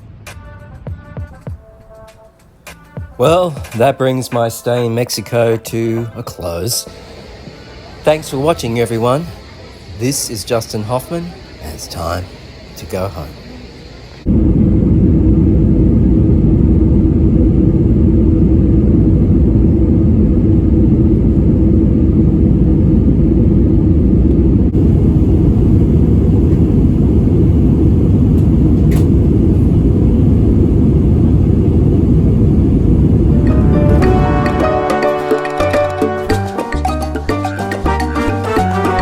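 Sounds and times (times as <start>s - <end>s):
steady hum: 1.6s - 36.4s
vehicle rumbling in motion: 14.1s - 34.9s.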